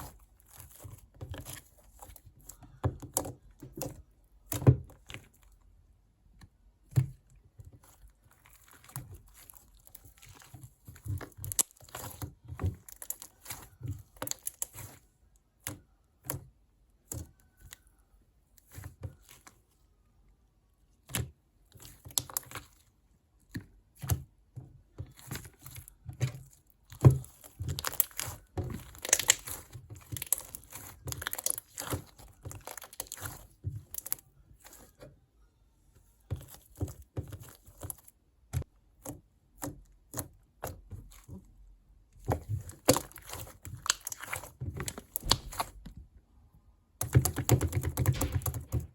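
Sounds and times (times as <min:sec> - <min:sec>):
slime squished by hand: 0:25.1 - 0:35.0, 0:36.2 - 0:46.0.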